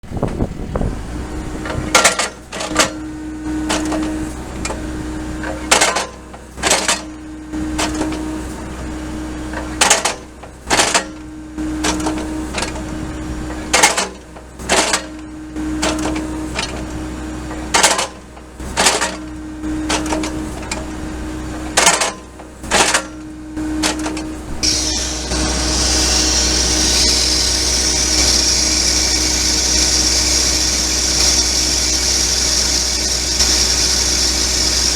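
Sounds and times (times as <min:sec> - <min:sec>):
excavator engine running: 0:00.0 - 0:34.9
hydraulic whine: 0:00.0 - 0:34.9
high hiss: 0:24.6 - 0:34.9.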